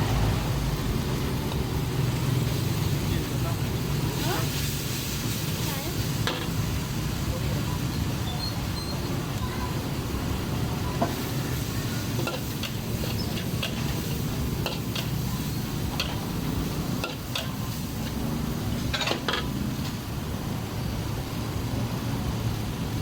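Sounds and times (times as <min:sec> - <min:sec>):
metal spatula scraping wok: 0:11.6 - 0:19.5.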